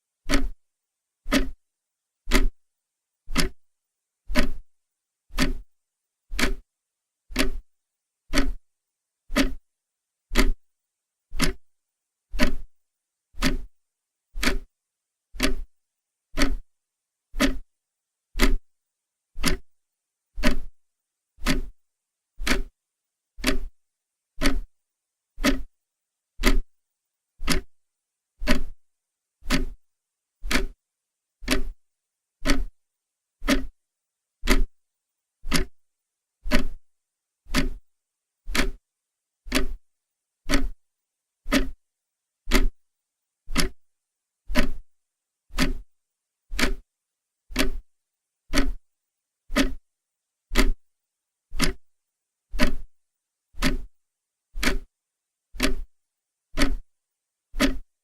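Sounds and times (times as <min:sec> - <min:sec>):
clock ticking: 0:00.3 - 0:00.6, 0:01.3 - 0:01.6, 0:02.3 - 0:02.6, 0:03.3 - 0:03.6, 0:04.3 - 0:04.6, 0:05.3 - 0:05.6, 0:06.3 - 0:06.6, 0:07.3 - 0:07.6, 0:08.3 - 0:08.6, 0:09.3 - 0:09.6, 0:10.3 - 0:10.6, 0:11.4 - 0:11.6, 0:12.4 - 0:12.7, 0:13.4 - 0:13.7, 0:14.4 - 0:14.7, 0:15.4 - 0:15.7, 0:16.4 - 0:16.7, 0:17.4 - 0:17.6, 0:18.4 - 0:18.6, 0:19.4 - 0:19.7, 0:20.4 - 0:20.7, 0:21.4 - 0:21.7, 0:22.4 - 0:22.7, 0:23.4 - 0:23.7, 0:24.4 - 0:24.7, 0:25.4 - 0:25.7, 0:26.4 - 0:26.7, 0:27.4 - 0:27.7, 0:28.4 - 0:28.8, 0:29.4 - 0:29.8, 0:30.4 - 0:30.8, 0:31.4 - 0:31.8, 0:32.4 - 0:32.8, 0:33.4 - 0:33.7, 0:34.5 - 0:34.7, 0:35.5 - 0:35.8, 0:36.5 - 0:36.8, 0:37.5 - 0:37.8, 0:38.5 - 0:38.8, 0:39.5 - 0:39.8, 0:40.5 - 0:40.8, 0:41.5 - 0:41.8, 0:42.5 - 0:42.8, 0:43.5 - 0:43.8, 0:44.5 - 0:44.8, 0:45.5 - 0:45.9, 0:46.5 - 0:46.8, 0:47.5 - 0:47.9, 0:48.5 - 0:48.8, 0:49.5 - 0:49.8, 0:50.6 - 0:50.8, 0:51.6 - 0:51.9, 0:52.6 - 0:52.9, 0:53.6 - 0:53.9, 0:54.6 - 0:54.9, 0:55.6 - 0:55.9, 0:56.6 - 0:56.9, 0:57.6 - 0:57.9.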